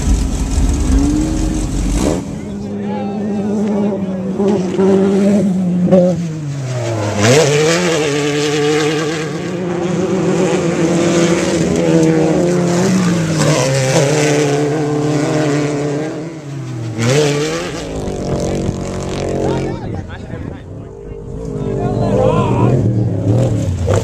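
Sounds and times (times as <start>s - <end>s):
race vehicle engine revving: 0.0s - 24.0s.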